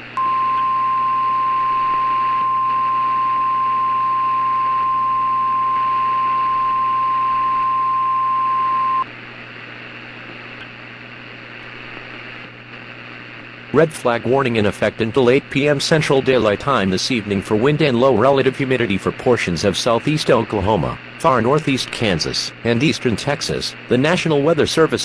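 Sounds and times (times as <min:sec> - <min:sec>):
radio hiss: 0:00.0 - 0:25.0
piercing warning alarm beep: 0:00.2 - 0:09.0.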